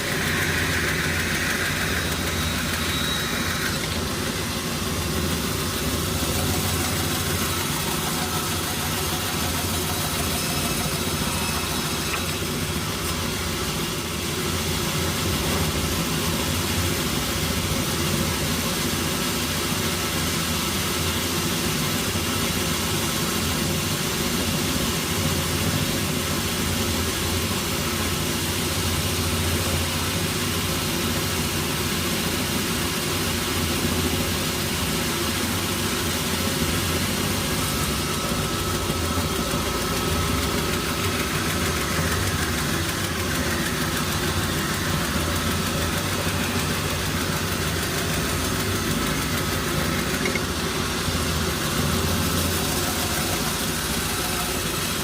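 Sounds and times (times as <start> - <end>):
faint thin whine: 0.0 - 8.6
sawmill machinery drone: 0.0 - 55.0.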